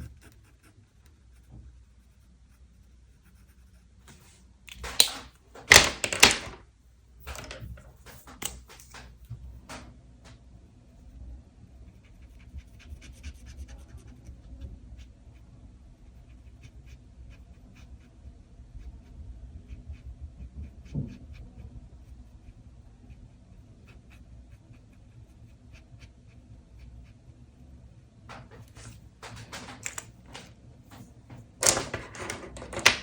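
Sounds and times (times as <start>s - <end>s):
pen scratching on paper: 11.8s - 15.4s.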